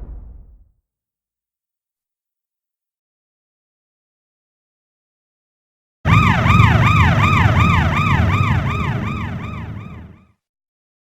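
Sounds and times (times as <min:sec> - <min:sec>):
warbling siren-like electronic tone: 0:06.1 - 0:10.3.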